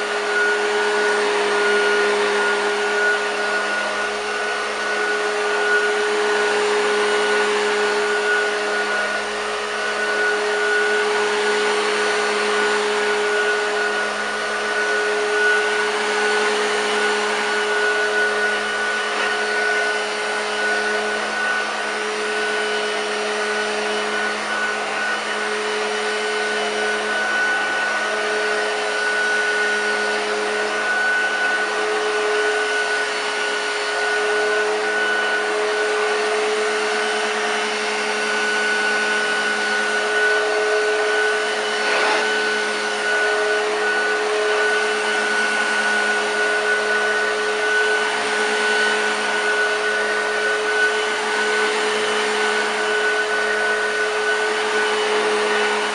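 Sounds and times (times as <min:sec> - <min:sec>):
upright vacuum cleaner running: 0:00.0 - 0:55.9.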